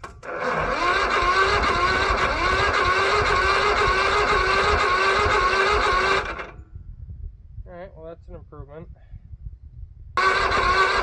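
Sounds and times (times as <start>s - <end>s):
starter motor whining cranking engine: 0.0s - 6.6s, 10.2s - 11.0s.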